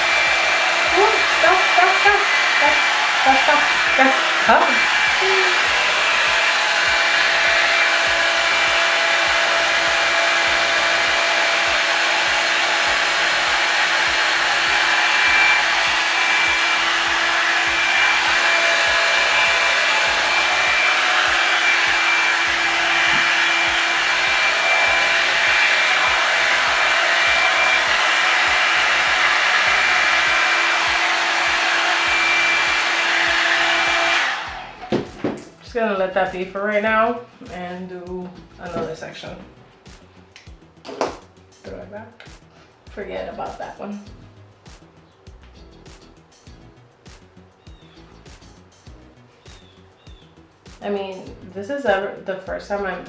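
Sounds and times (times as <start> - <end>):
hair dryer running: 0.0 - 41.3, 52.8 - 53.0.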